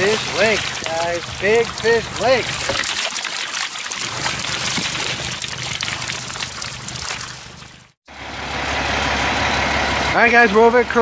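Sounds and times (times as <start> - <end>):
water gushing from tank outlet: 0.0 - 8.0.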